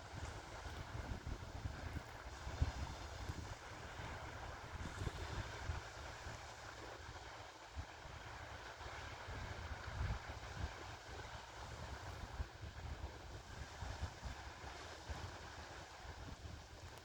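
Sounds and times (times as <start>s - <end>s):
wind buffeting microphone: 0.0s - 6.4s
sea waves washing ashore: 0.0s - 17.0s.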